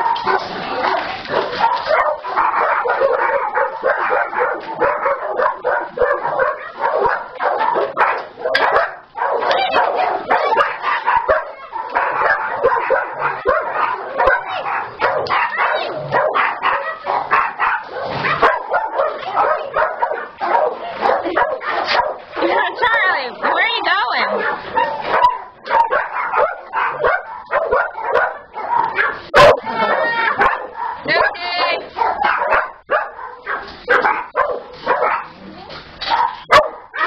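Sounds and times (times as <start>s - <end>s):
small dogs barking and yipping: 0.0s - 37.0s.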